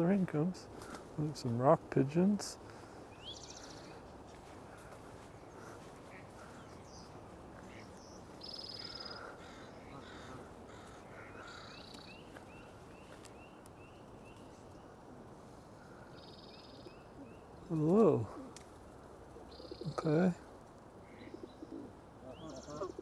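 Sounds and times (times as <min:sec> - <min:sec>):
low background hiss: 0:00.0 - 0:23.0
wild birds calling: 0:00.0 - 0:23.0
buzzy high bird calls: 0:05.2 - 0:14.8.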